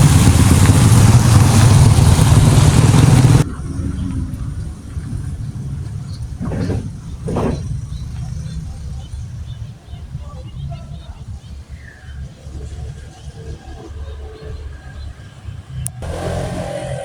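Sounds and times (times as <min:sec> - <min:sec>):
loud noise: 0:00.0 - 0:03.7
engine running: 0:00.0 - 0:09.4, 0:15.8 - 0:17.0.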